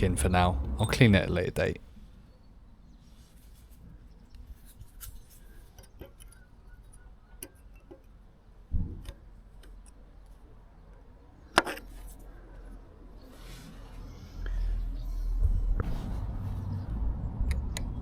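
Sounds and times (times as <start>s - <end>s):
small metallic clicks and taps: 5.7s - 8.2s.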